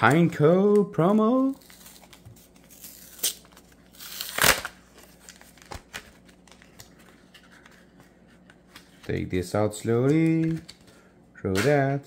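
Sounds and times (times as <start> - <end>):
plastic packaging crinkling and tearing: 1.2 - 7.4.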